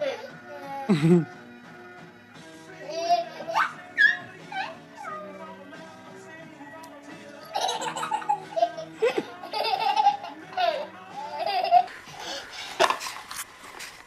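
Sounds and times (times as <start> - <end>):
baby laughing: 2.8 - 5.4, 7.4 - 13.1.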